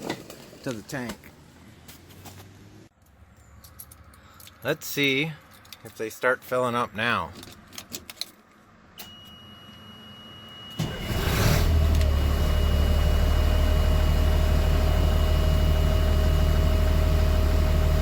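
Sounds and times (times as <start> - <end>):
diesel truck engine starting and idling: 10.6 - 18.0.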